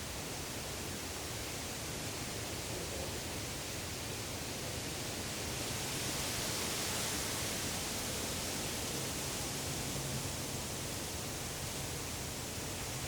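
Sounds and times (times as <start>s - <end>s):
wind rustling leaves: 0.0s - 13.0s.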